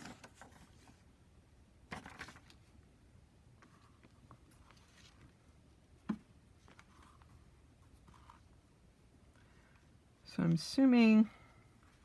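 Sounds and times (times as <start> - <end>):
hands handling a notebook: 1.9 - 2.8, 3.5 - 8.6.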